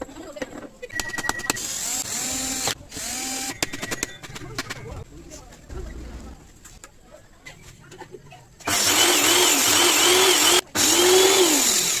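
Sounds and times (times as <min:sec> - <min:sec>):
electric hand planer running: 0:08.7 - 0:12.0.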